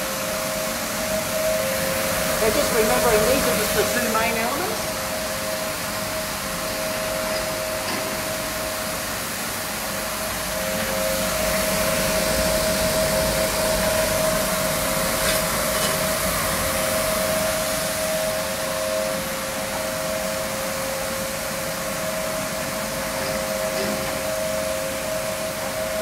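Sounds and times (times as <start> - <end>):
rug washing machine running: 0.0 - 26.0
rotating brushes on wet rug: 0.1 - 19.2.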